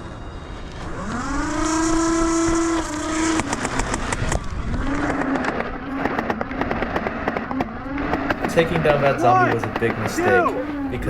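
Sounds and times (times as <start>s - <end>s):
dart blaster motor whine: 0.0s - 11.0s.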